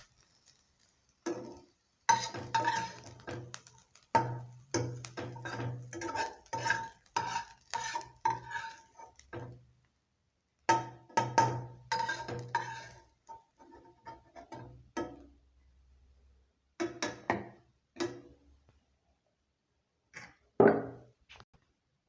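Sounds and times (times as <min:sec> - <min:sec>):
utensil scraping a pan: 0:00.0 - 0:09.6, 0:10.8 - 0:14.8.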